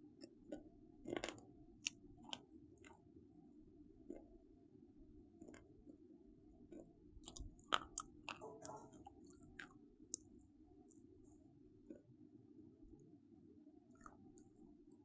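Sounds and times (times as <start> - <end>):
faint low hum: 0.0 - 15.0
crunchy food being crushed: 0.2 - 3.0, 6.7 - 10.3.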